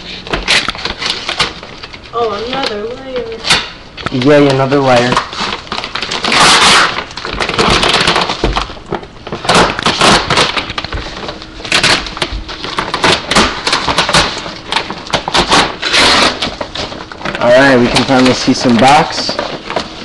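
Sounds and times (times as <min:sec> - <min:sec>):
packaging wrap ripping and crackling: 0:00.0 - 0:20.0.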